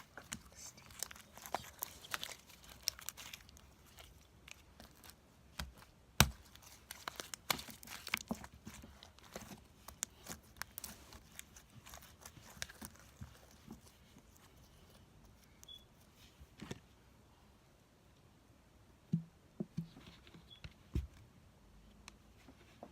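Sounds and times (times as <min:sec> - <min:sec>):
slime popping and crackling: 0:00.0 - 0:14.0.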